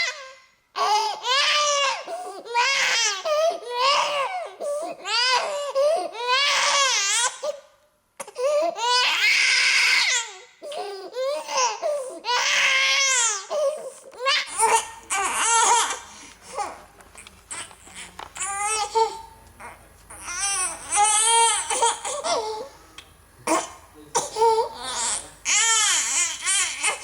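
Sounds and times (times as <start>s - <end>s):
baby crying: 0.0s - 7.6s, 8.2s - 22.8s, 23.4s - 27.0s
faint low hum: 13.5s - 27.0s.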